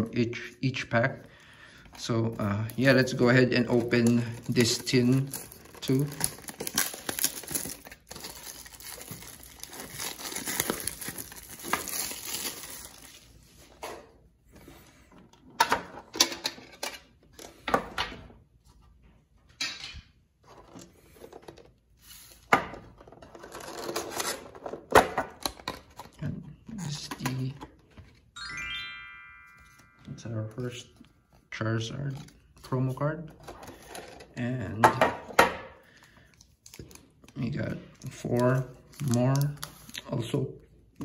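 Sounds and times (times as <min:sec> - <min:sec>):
plastic wrapping crinkling and tearing: 0:02.0 - 0:13.6, 0:36.3 - 0:40.3.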